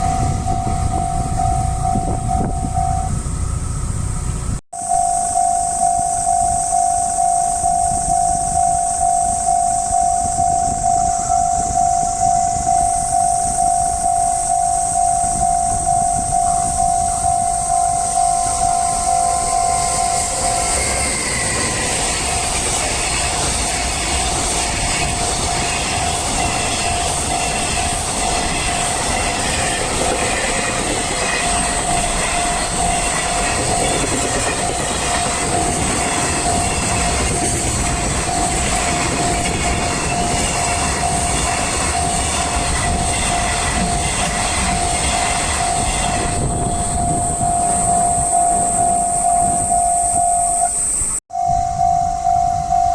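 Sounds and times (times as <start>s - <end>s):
level crossing bell ringing: 0.0s - 3.2s, 4.8s - 21.2s, 45.5s - 50.7s, 51.3s - 52.9s
train wheels clicking over rails: 7.0s - 49.6s.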